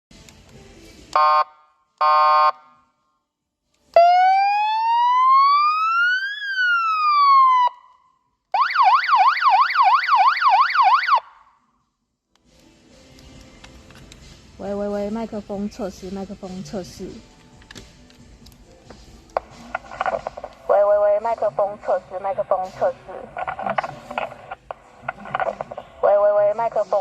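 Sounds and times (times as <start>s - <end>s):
siren wail: 3.9s - 11.4s.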